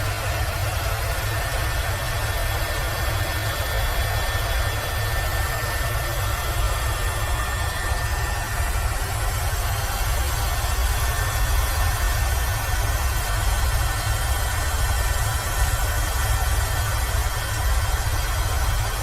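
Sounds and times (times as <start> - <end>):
helicopter rotor throb: 0.0 - 19.0.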